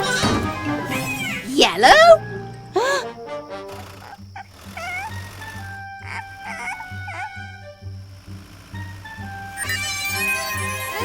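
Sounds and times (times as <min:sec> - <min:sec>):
cartoon background music: 0:00.0 - 0:08.0, 0:08.8 - 0:11.0
cartoon vocal noises: 0:01.3 - 0:02.2, 0:02.8 - 0:05.2, 0:06.0 - 0:07.5.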